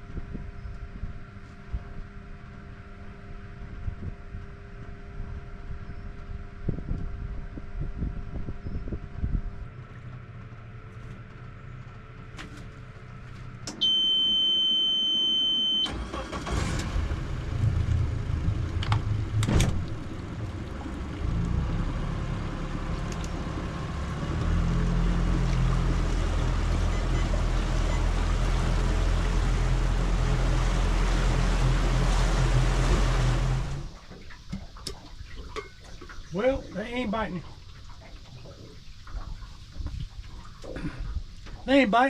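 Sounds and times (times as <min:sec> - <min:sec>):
outboard motor starting and running: 0:00.0 - 0:42.0
warning horn beeping: 0:13.8 - 0:16.1, 0:26.7 - 0:28.2.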